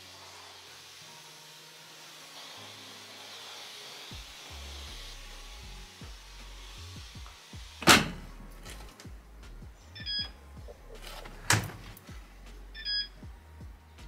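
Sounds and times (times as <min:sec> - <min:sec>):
soft background music: 0:00.0 - 0:14.0
electronic appliance beep: 0:10.0 - 0:10.4, 0:12.8 - 0:13.2.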